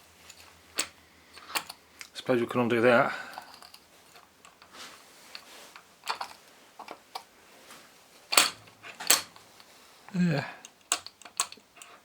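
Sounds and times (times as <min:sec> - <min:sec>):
clicks and taps of tools and parts: 0:00.3 - 0:02.2, 0:05.3 - 0:07.3, 0:08.3 - 0:09.7, 0:10.6 - 0:12.0.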